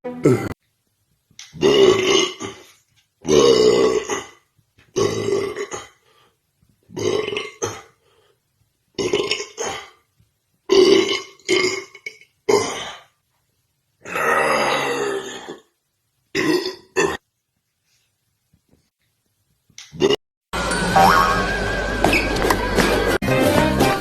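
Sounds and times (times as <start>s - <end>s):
person burping: 0.2s - 0.6s, 1.4s - 4.4s, 5.0s - 6.0s, 6.9s - 8.0s, 9.0s - 10.0s, 10.7s - 13.2s, 14.0s - 15.7s, 16.3s - 17.2s, 19.9s - 20.2s.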